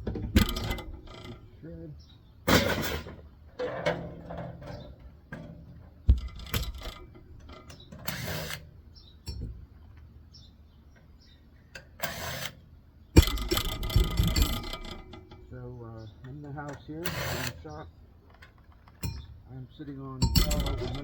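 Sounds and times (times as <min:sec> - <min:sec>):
tool clicks and knocks: 0:00.0 - 0:01.5, 0:13.2 - 0:15.5, 0:18.3 - 0:19.4, 0:20.2 - 0:21.0
clattering metal knocks: 0:00.0 - 0:01.6, 0:02.5 - 0:08.5, 0:09.2 - 0:10.0, 0:13.2 - 0:15.6, 0:18.3 - 0:19.4, 0:20.1 - 0:21.0
short scraping rasps: 0:06.2 - 0:08.7, 0:11.8 - 0:12.6, 0:13.2 - 0:17.8.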